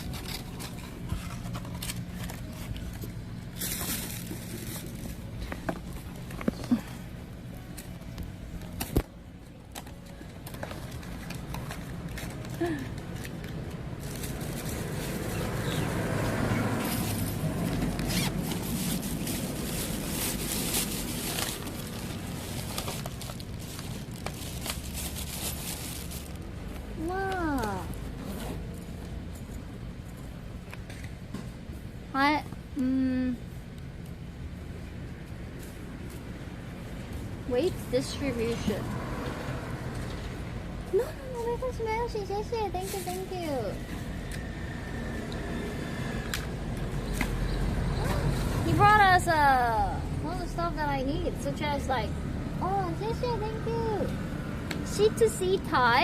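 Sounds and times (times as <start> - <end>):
bags rustling: 0.0 - 7.0, 16.8 - 26.6
rustling of items packed: 0.0 - 16.0, 16.7 - 31.1, 40.9 - 44.1
bag zipper: 18.0 - 19.0.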